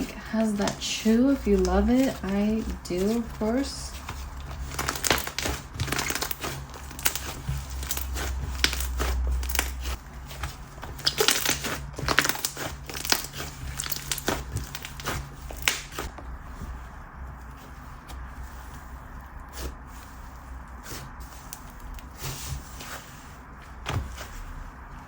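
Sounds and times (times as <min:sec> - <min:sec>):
slime popping and crackling: 0:00.0 - 0:16.2.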